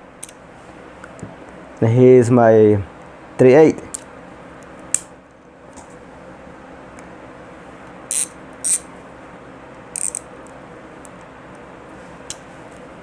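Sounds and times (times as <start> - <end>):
ratchet clicking: 8.1 - 8.8, 10.0 - 10.2
metal tool parts clicking: 10.0 - 10.2.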